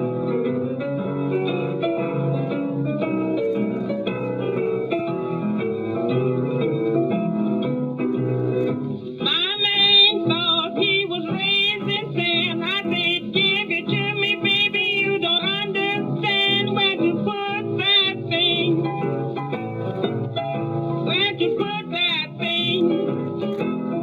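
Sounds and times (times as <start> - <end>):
piano: 0.0 - 24.0
woman singing blues with vibrato: 9.2 - 18.9, 21.1 - 23.0.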